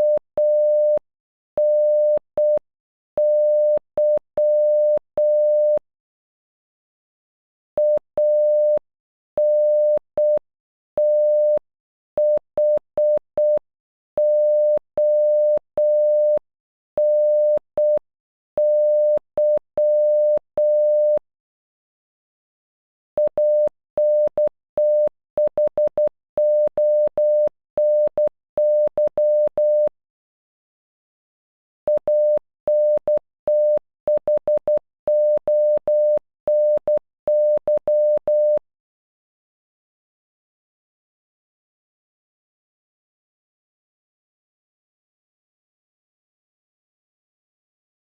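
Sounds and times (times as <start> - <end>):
morse code tone: 0.0 - 1.0, 18.6 - 21.2, 23.2 - 29.9, 31.9 - 38.6.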